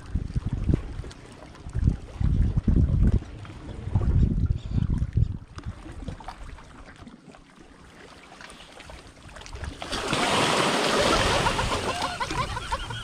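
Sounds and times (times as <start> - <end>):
seawater washing and splashing: 5.6 - 13.0.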